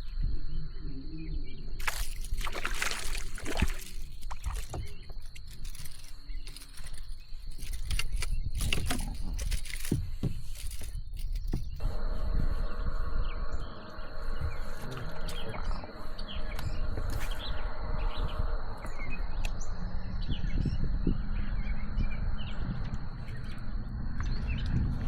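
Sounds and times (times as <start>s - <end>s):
small birds chirping: 0.0s - 11.9s, 12.5s - 25.0s
steady low rumble: 10.5s - 25.0s
thin high whine: 11.8s - 25.0s.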